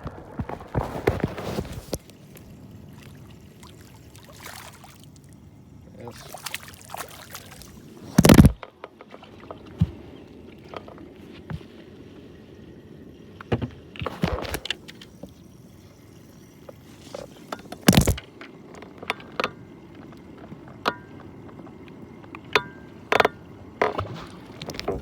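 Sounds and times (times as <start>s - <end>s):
knocks and clunks on a boat: 7.7s - 11.9s, 13.4s - 15.4s, 16.6s - 25.0s.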